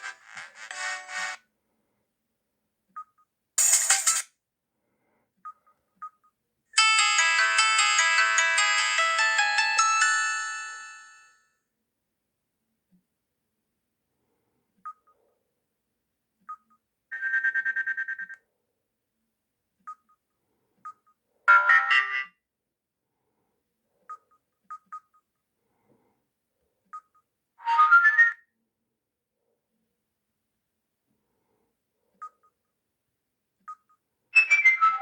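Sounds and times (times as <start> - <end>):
phone ringtone previews: 0.0 - 1.4, 6.8 - 11.3.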